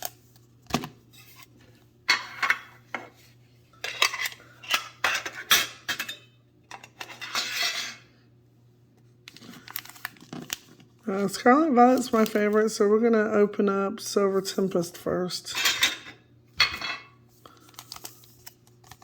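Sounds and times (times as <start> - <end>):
metal tin clinking and scraping: 7.0 - 8.0.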